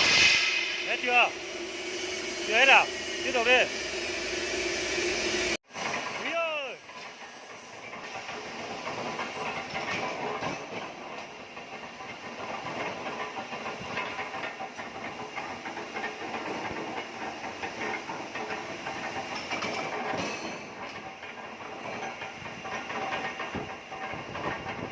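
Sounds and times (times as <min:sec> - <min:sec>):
cutting torch hissing and crackling: 0:00.0 - 0:10.2.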